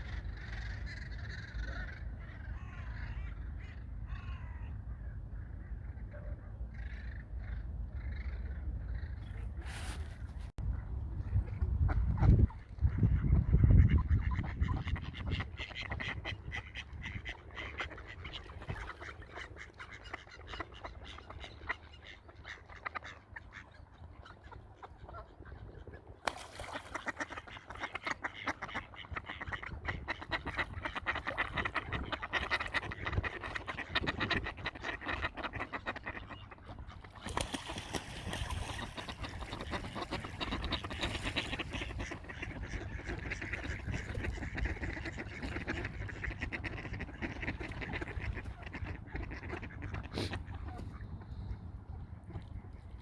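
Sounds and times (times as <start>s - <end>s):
ducks quacking: 11.8s - 25.4s, 26.6s - 51.1s.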